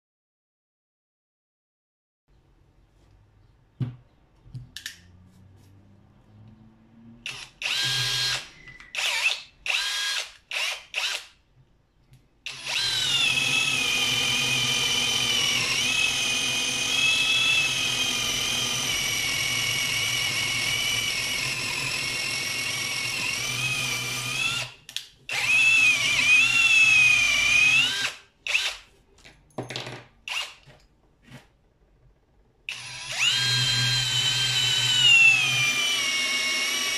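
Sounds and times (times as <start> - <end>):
cordless drill running: 7.2 - 11.3, 12.5 - 28.8, 30.3 - 30.6, 32.7 - 36.9.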